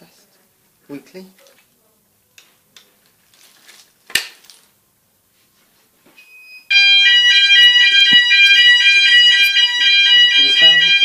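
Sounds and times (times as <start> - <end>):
fire alarm sounders: 6.2 - 11.0.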